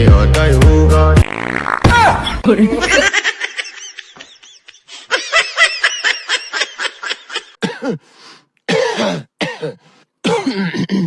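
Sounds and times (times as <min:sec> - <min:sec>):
rapid high-pitched laughter: 0:02.6 - 0:07.6
harsh cough: 0:07.5 - 0:08.0, 0:08.7 - 0:11.0.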